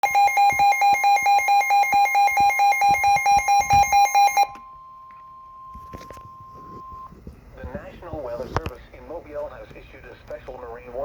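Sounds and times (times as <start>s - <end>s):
steady warning alert tone: 0.0s - 4.7s
radio alarm beeping: 0.0s - 7.1s.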